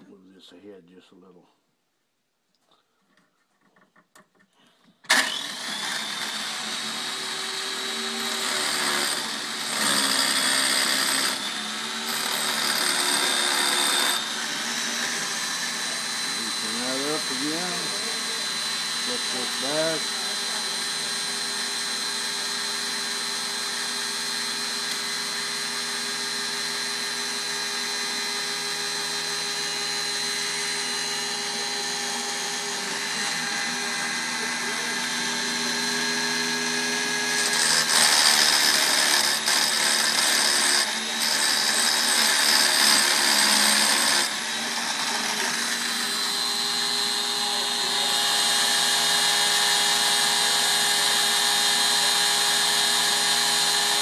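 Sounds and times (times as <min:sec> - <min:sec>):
harsh metal grinding: 0:05.1 - 0:20.1, 0:29.7 - 0:48.9
grinder motor running: 0:05.1 - 0:54.0.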